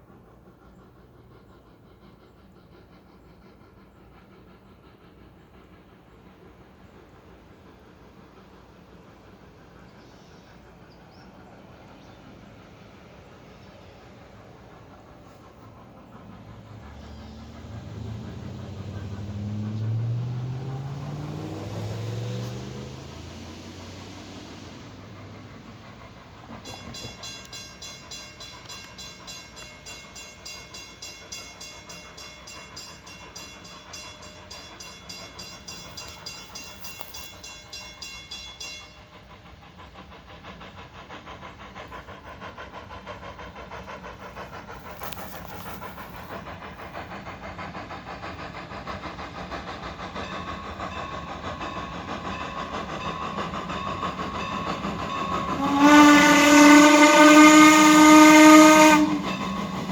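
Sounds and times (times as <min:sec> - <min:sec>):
steam locomotive exhaust chuffing: 0:00.0 - 0:59.9
steam whistle blast: 0:55.5 - 0:59.6.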